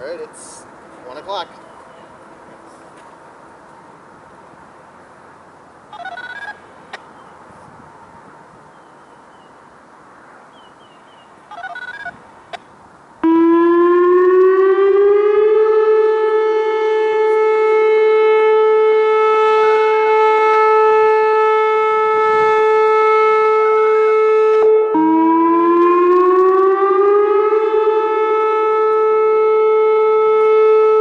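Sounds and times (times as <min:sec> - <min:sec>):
electronic warning siren: 0:13.2 - 0:31.0.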